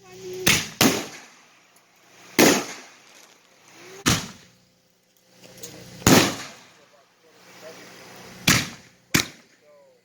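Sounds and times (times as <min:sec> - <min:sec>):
firework shells banging: 0:00.3 - 0:04.6, 0:05.6 - 0:06.9, 0:08.4 - 0:09.7.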